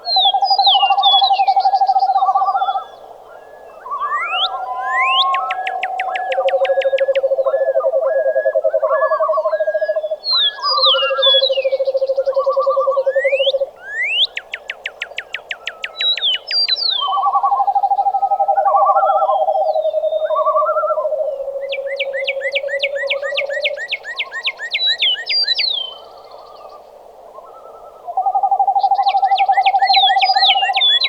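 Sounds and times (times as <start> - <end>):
whistled bird chirps: 0.1 - 12.4, 13.1 - 21.0, 28.6 - 31.0
high clicking calls: 4.2 - 7.4.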